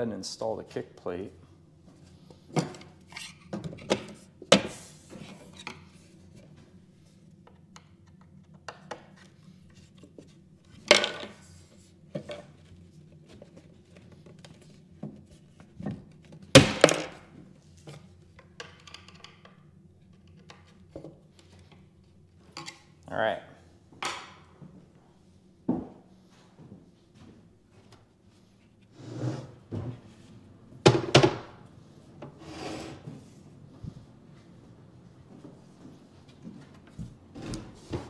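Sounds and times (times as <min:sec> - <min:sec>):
wooden cabinet parts knocking: 0:30.8 - 0:31.6.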